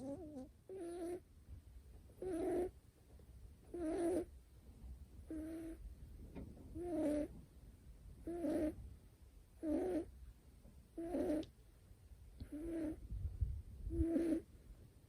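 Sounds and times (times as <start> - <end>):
kitten snoring: 0.0 - 1.3, 2.1 - 2.8, 3.7 - 4.3, 5.2 - 5.8, 6.7 - 7.3, 8.2 - 8.8, 9.6 - 10.2, 10.9 - 11.5, 12.4 - 13.1, 13.9 - 14.5.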